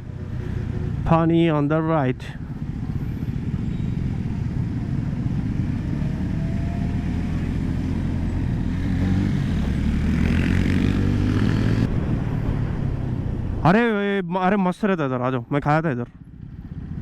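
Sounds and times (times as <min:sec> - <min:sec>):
wind and road noise: 0:00.0 - 0:17.0
motorcycle engine running: 0:02.4 - 0:11.9, 0:16.1 - 0:17.0.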